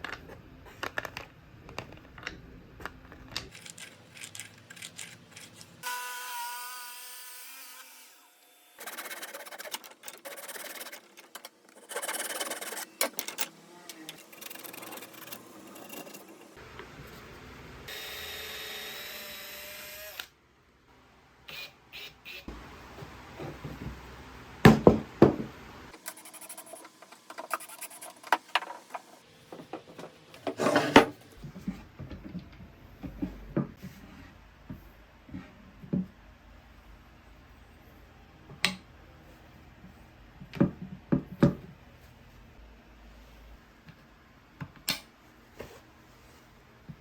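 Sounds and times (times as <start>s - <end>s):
wood scraping: 26.0s - 31.4s.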